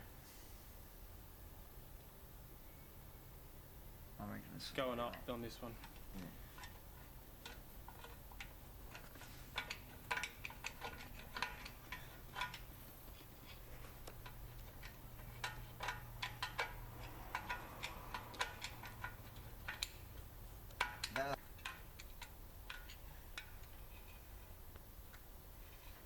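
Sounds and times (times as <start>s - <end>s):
metallic ratchet clicks: 7.4s - 12.7s, 13.9s - 24.1s.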